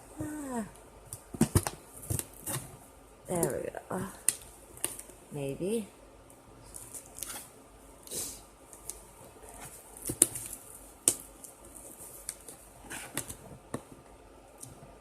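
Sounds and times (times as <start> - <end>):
packing tape scratching and rustling: 1.1 - 5.2, 6.6 - 7.5, 8.7 - 13.9.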